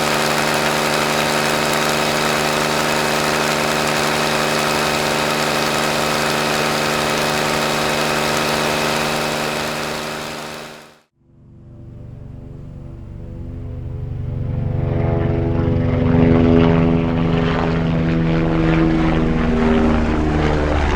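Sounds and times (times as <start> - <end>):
helicopter engine and rotor: 0.0 - 11.1.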